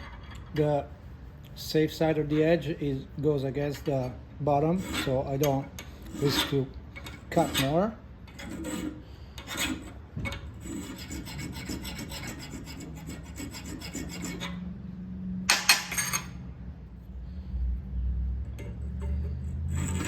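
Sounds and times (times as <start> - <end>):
hand file scraping steel: 3.7 - 14.7, 18.5 - 20.0.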